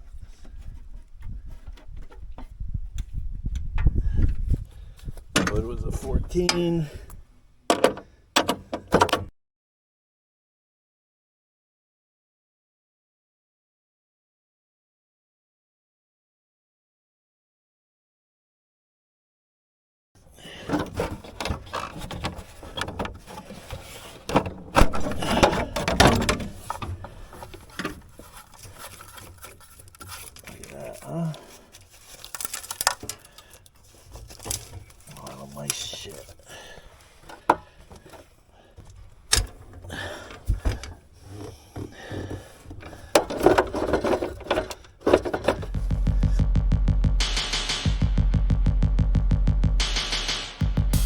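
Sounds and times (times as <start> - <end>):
metal parts being handled: 20.8 - 31.0, 31.7 - 35.3, 42.6 - 45.8
sharp knocks: 45.6 - 51.0.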